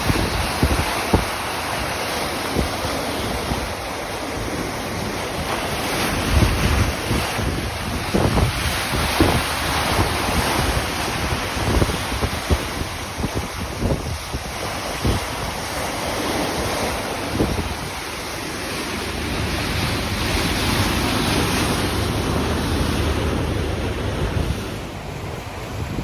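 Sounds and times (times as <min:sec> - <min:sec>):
ocean waves rushing: 0:00.0 - 0:26.0
wind buffeting microphone: 0:00.0 - 0:26.0.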